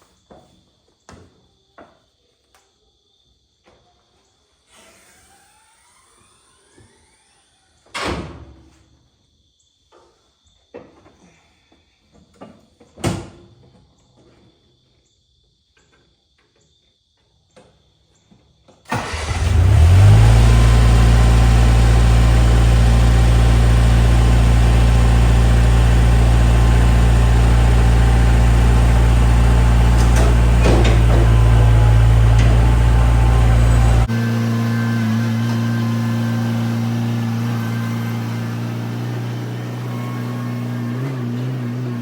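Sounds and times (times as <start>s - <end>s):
skid steer engine running: 18.9s - 42.0s.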